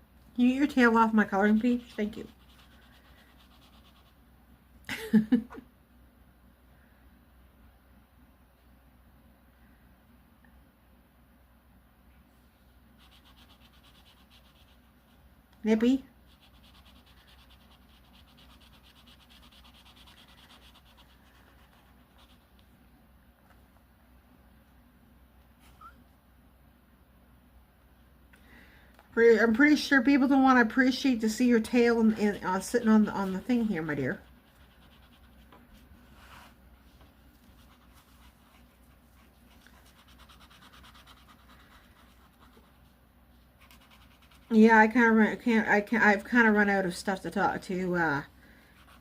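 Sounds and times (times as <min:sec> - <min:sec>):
colouring strokes scratching on paper: 0:00.8 - 0:04.2, 0:13.0 - 0:22.6, 0:30.8 - 0:44.6, 0:48.7 - 0:49.0.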